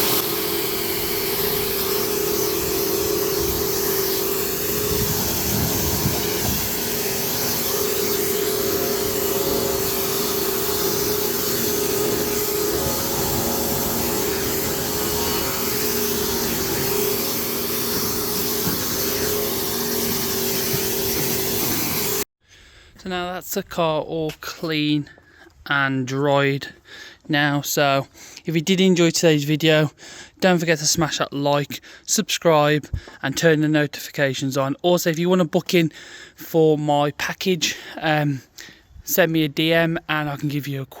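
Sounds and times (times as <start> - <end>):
pressure washer pump humming: 0.0 - 22.3
water jet hissing: 0.0 - 22.3.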